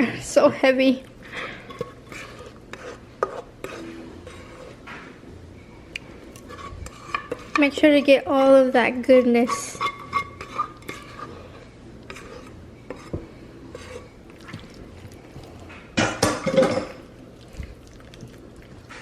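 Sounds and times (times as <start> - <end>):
utensil scraping a pot: 1.3 - 4.8, 6.4 - 15.8.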